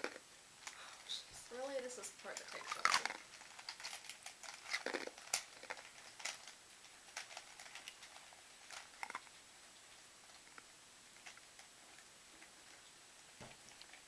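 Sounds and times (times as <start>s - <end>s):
puzzle cube clicking and rattling: 2.4s - 9.2s.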